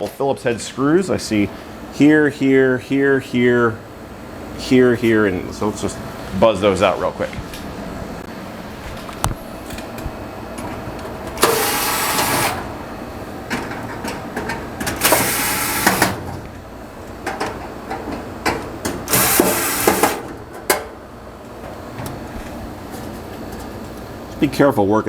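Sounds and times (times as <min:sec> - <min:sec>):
cordless power driver running: 0:10.9 - 0:13.0, 0:15.0 - 0:16.6, 0:19.1 - 0:20.3.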